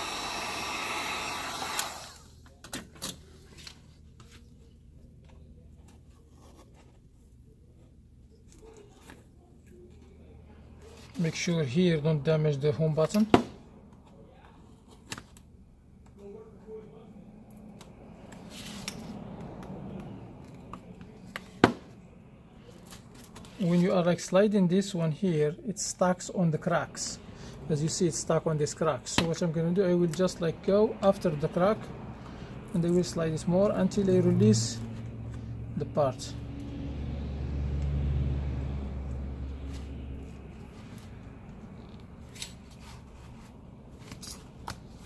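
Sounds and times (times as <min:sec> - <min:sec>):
heat gun hissing: 0:00.0 - 0:02.2.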